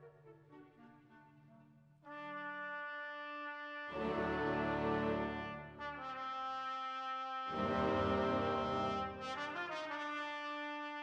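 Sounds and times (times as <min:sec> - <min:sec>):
music of long held chords: 0:07.5 - 0:09.2.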